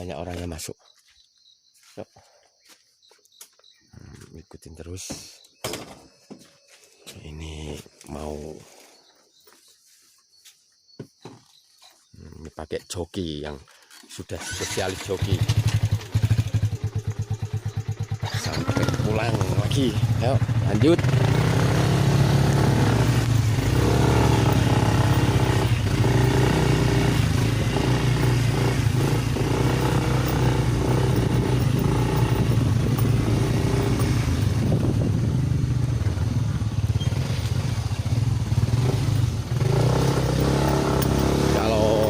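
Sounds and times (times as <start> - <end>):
motorcycle engine running: 14.6 - 42.0.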